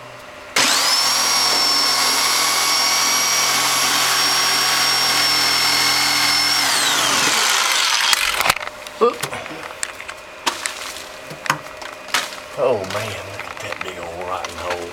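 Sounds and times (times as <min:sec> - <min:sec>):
reciprocating saw cutting wood: 0:00.6 - 0:08.6.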